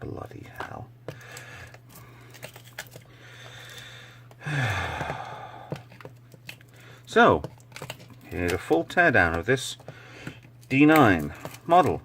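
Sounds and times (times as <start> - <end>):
low steady hum: 0.0 - 12.0
long breathy sigh: 3.8 - 5.8.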